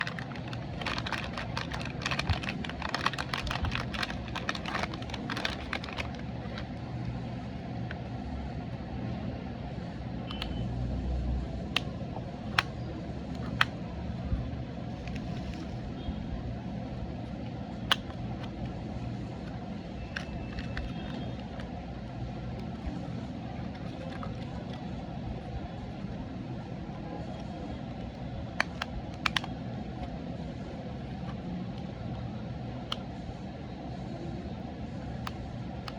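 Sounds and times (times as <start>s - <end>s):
plastic packaging crinkling: 0.0s - 6.7s, 20.2s - 21.6s, 23.7s - 24.7s
steady low hum: 0.0s - 35.9s.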